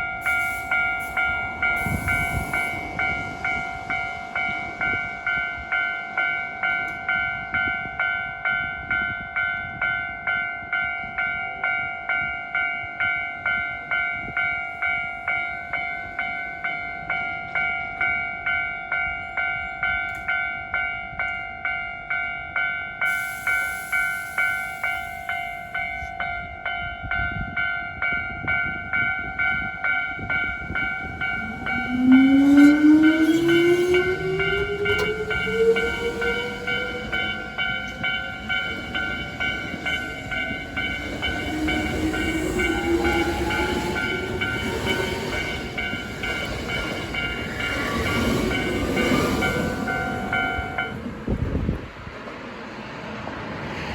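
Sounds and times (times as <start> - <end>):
level crossing warning bell: 0.0 - 51.2
electric train motors whining: 30.7 - 51.1.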